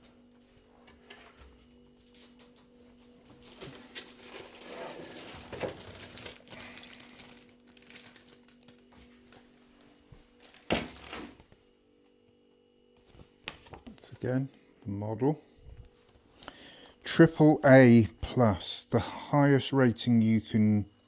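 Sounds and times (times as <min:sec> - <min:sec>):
packaging rustling and crinkling: 0:03.3 - 0:09.5, 0:10.1 - 0:11.6.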